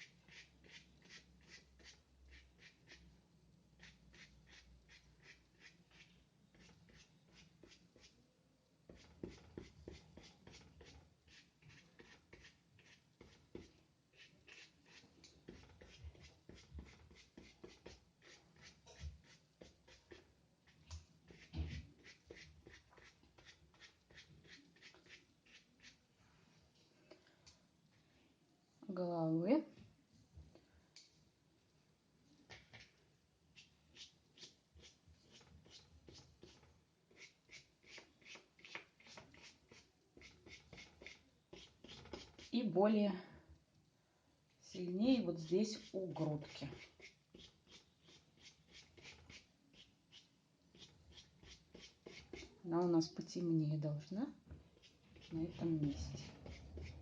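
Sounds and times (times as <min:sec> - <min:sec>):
brush strokes on paper: 0:00.0 - 0:03.1, 0:03.8 - 0:08.2, 0:08.9 - 0:26.7, 0:32.5 - 0:42.6, 0:45.3 - 0:52.6, 0:54.7 - 0:57.0
brush knocking against paper: 0:21.3 - 0:22.4.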